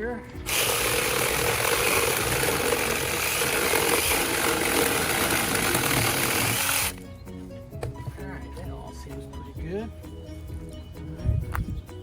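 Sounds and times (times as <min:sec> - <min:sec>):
mini chainsaw running: 0:00.4 - 0:07.0.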